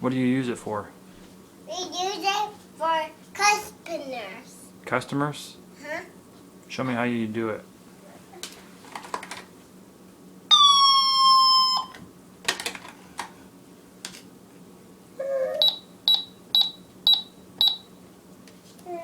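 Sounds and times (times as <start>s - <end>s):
cash register buzzing tone: 10.5s - 12.0s.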